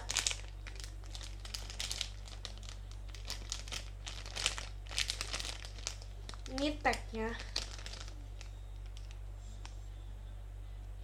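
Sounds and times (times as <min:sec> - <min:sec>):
plastic packaging crackling: 0:00.0 - 0:09.8.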